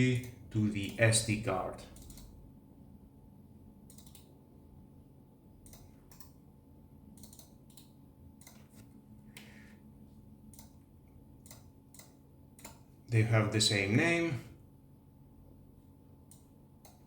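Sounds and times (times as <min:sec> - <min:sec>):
low steady hum: 0:00.0 - 0:17.0
faint computer mouse clicks: 0:02.0 - 0:02.3, 0:03.9 - 0:04.3, 0:05.6 - 0:06.4.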